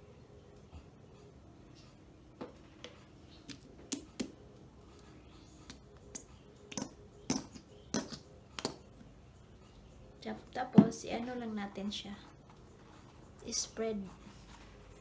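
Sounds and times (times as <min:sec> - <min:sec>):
kitchen items clicking and tapping: 0:05.7 - 0:08.9.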